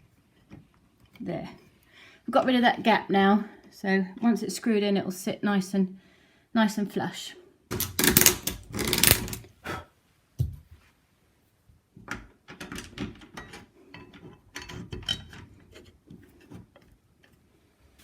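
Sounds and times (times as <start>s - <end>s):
small clicks and rattles: 7.7s - 9.5s.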